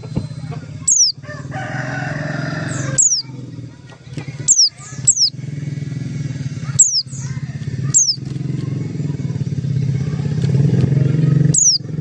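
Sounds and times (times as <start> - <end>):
bird high call notes: 0.4 - 1.2, 2.3 - 3.3, 4.4 - 5.5, 6.6 - 8.3, 11.4 - 12.0
rooster crowing: 1.0 - 3.2.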